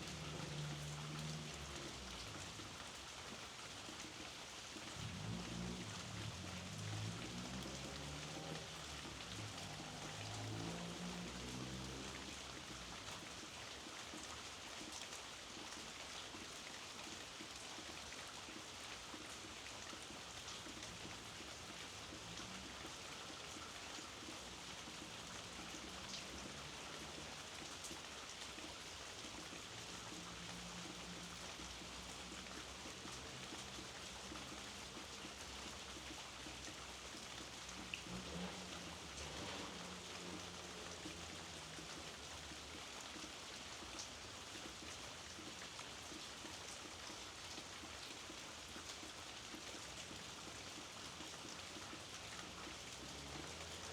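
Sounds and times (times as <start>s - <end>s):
steady rainfall: 0.0s - 53.9s.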